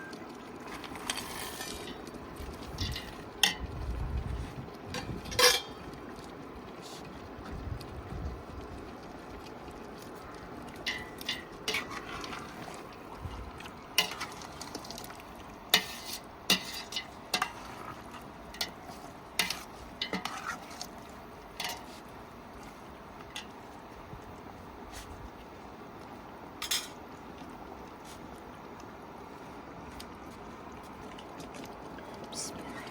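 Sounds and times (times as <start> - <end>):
spoon stirring food in a pot: 0.6 - 3.8, 10.8 - 23.7.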